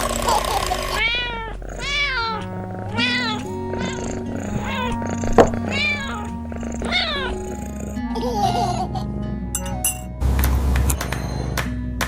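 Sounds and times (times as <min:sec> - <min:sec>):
cat meowing: 0:00.8 - 0:07.8
background music: 0:01.0 - 0:12.0.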